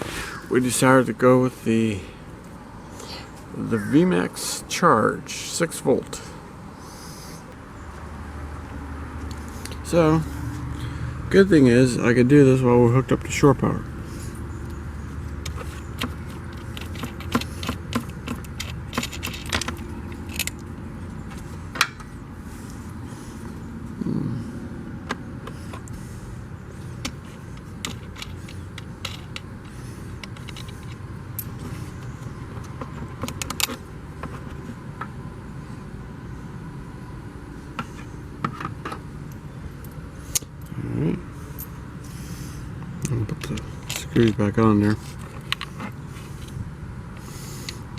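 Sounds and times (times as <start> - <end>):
steady low hum: 0.0 - 47.9.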